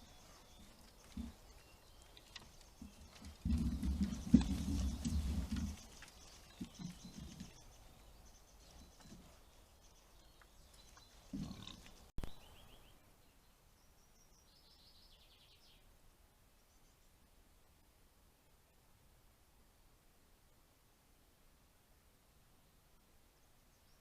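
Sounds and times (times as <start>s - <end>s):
wild boar grunting: 11.1s - 12.1s.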